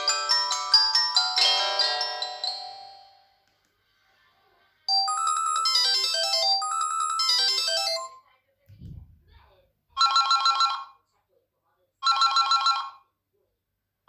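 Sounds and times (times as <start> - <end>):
phone chiming melody: 0.0 - 3.4, 4.9 - 8.2.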